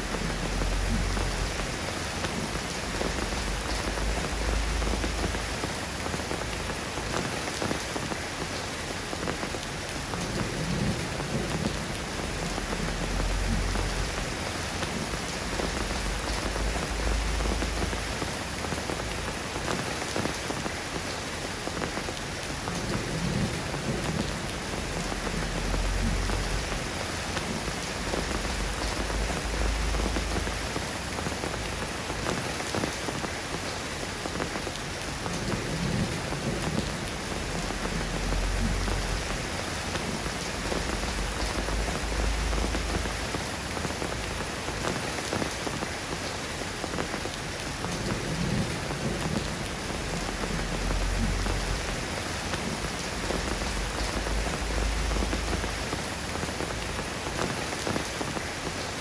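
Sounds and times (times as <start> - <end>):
rain pattering: 0.0 - 59.0
distant thunder rumbles: 35.3 - 44.8, 47.9 - 57.2.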